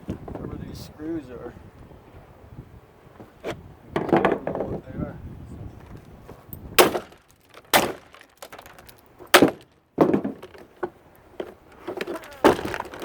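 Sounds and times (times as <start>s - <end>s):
small knocks: 4.0s - 4.8s, 6.8s - 13.0s.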